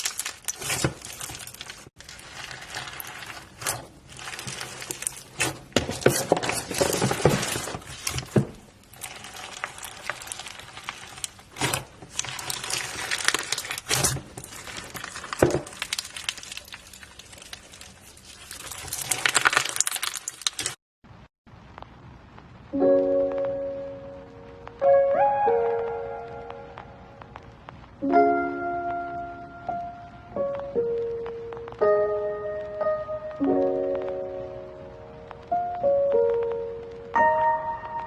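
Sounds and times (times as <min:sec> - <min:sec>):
slime squishing and popping: 0:00.0 - 0:20.8.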